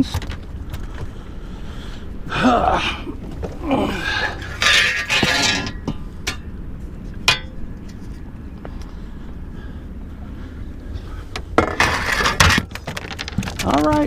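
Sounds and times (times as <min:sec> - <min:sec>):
fish flopping and clattering: 0:11.4 - 0:14.0.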